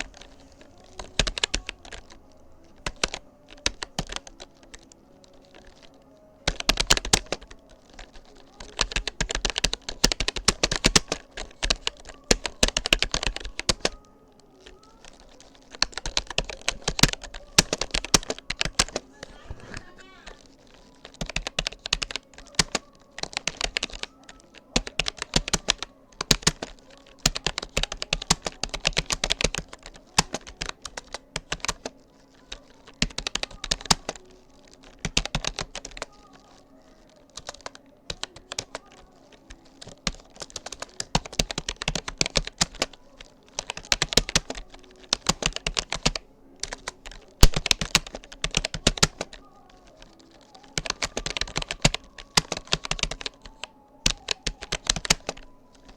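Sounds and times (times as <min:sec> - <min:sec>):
typing on computer keyboard: 0:00.0 - 0:55.9.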